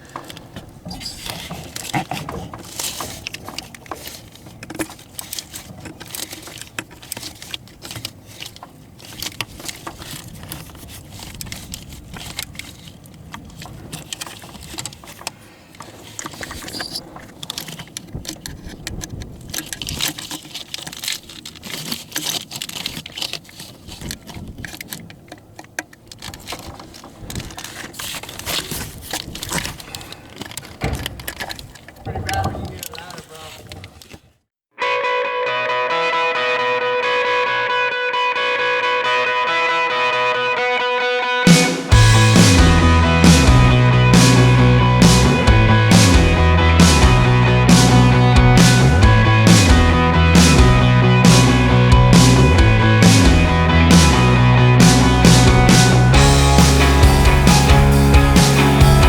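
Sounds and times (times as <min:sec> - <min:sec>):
hand tools and metal parts clinking: 0:00.0 - 0:34.2.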